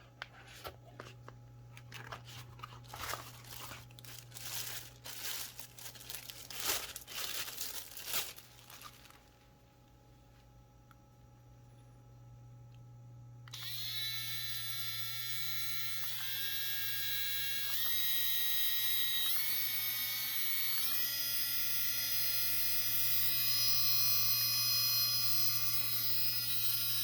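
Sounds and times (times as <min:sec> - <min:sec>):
rotary tool whining: 0:13.5 - 0:27.0.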